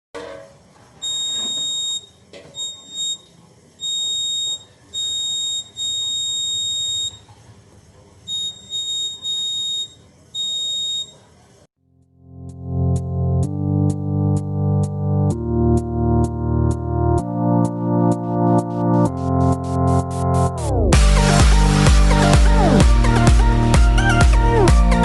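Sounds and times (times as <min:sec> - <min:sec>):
alarm buzzer electronic tone: 0:01.0 - 0:07.3, 0:08.3 - 0:11.2.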